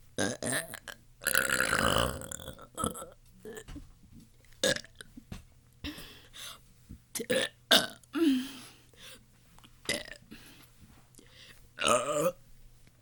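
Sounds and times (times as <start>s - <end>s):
person burping: 0.2s - 3.7s, 4.6s - 4.9s, 7.2s - 8.5s, 9.9s - 10.2s, 11.8s - 12.4s.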